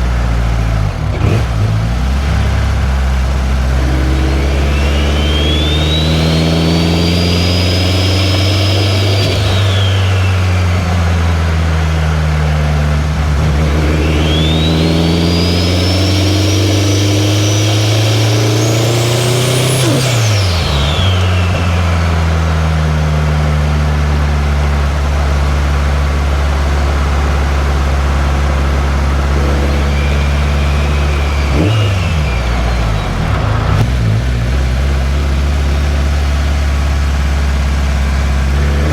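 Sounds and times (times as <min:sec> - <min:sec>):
car engine accelerating: 0:00.0 - 0:38.9
turbo whistle: 0:03.6 - 0:11.4, 0:13.2 - 0:23.0, 0:28.1 - 0:33.9.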